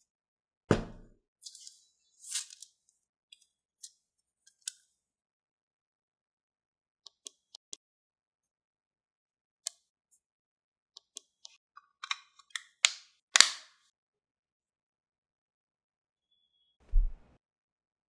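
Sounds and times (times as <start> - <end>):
clicks and snaps of handled packaging: 12.0 - 13.8.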